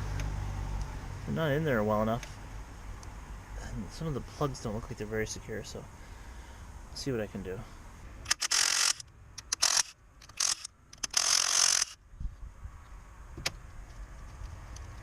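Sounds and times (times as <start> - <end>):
sharp click: 8.2 - 12.0.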